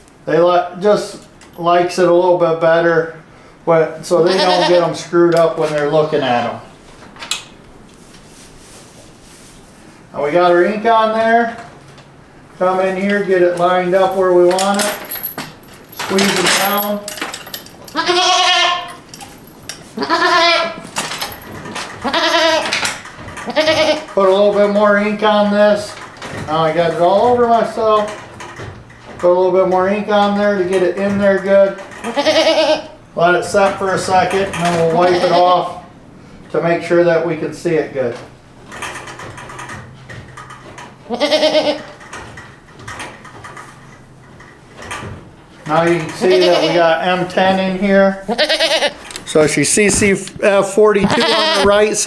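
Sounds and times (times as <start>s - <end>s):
goat bleating: 4.2s - 5.0s, 17.9s - 18.9s, 20.0s - 20.9s, 22.0s - 22.8s, 23.4s - 24.2s, 32.1s - 33.0s, 34.9s - 35.8s, 41.1s - 42.0s, 46.1s - 47.0s, 48.2s - 49.0s, 51.0s - 52.0s.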